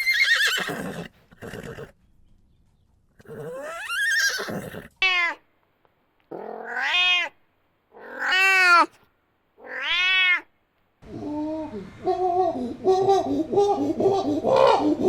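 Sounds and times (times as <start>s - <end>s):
horse whinny: 0.0s - 1.9s, 3.2s - 5.0s
cat meowing: 6.3s - 7.4s, 8.0s - 9.0s, 9.6s - 10.5s.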